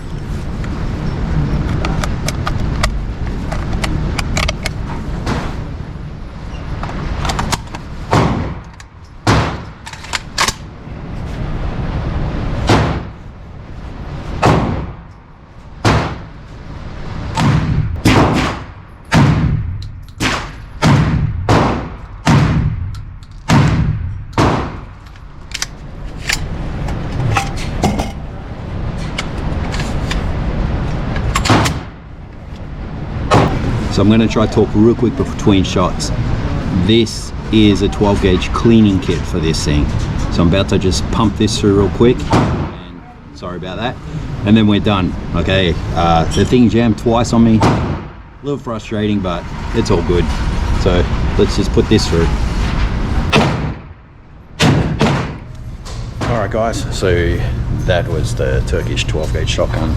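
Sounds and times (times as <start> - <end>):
shotgun shots: 17.4 - 19.6, 20.2 - 22.8, 23.5 - 24.9, 53.3 - 53.9, 54.6 - 55.5.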